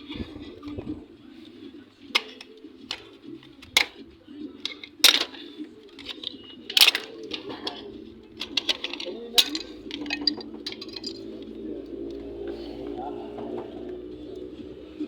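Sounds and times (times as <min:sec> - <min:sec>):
pigeons cooing: 0:00.0 - 0:15.0
hand tools clicking on metal: 0:02.1 - 0:04.0, 0:04.6 - 0:11.5.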